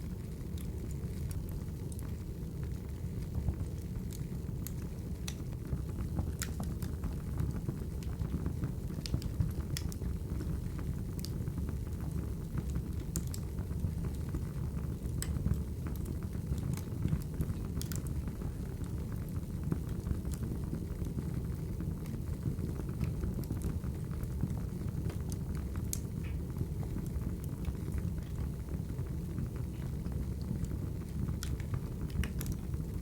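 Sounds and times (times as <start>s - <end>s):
fire popping and crackling: 0.1s - 33.0s
burning logs rumbling: 12.1s - 33.0s.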